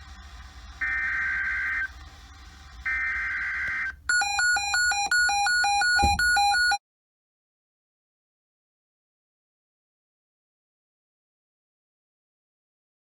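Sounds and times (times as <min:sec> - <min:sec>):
screechy digital data bursts: 0:00.7 - 0:01.9
rapid electronic beeping alert tone: 0:00.8 - 0:01.9, 0:02.9 - 0:06.8.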